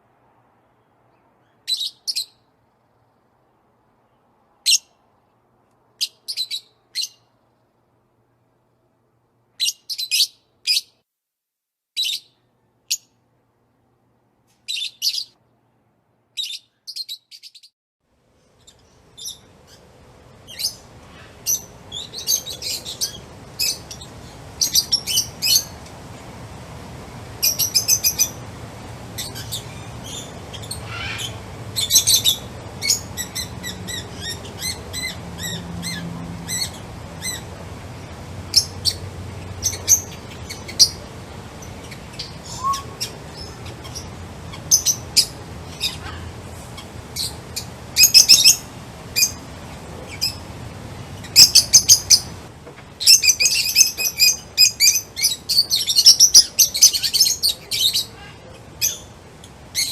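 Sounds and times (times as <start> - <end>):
small birds chirping: 0.8 - 3.3, 6.0 - 7.3, 12.0 - 13.1, 14.7 - 15.4, 16.4 - 17.7, 18.4 - 59.9
low background hum: 18.1 - 59.9.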